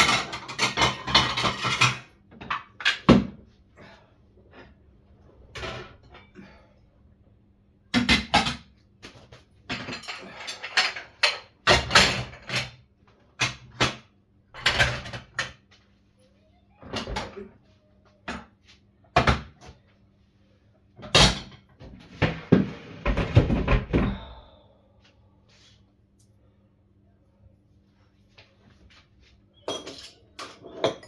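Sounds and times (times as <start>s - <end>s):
dishes clattering: 0.0s - 3.2s, 29.6s - 31.0s
household things thudding: 21.0s - 24.5s.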